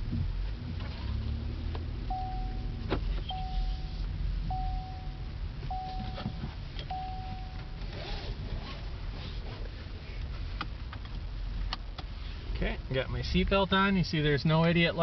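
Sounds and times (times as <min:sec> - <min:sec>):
car engine idling: 0:00.0 - 0:15.0
dashboard chime dings: 0:02.1 - 0:03.9, 0:04.5 - 0:07.8.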